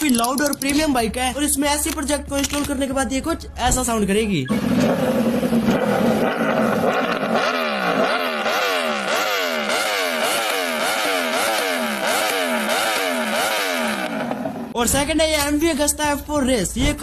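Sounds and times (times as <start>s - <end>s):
motorcycle engine revving: 4.5s - 14.8s.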